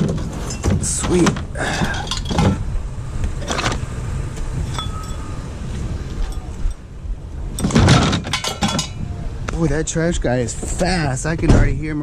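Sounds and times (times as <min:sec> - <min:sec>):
steady low rumble: 0:00.0 - 0:12.0
metal clinks: 0:01.9 - 0:02.7, 0:04.7 - 0:05.4, 0:07.5 - 0:09.1.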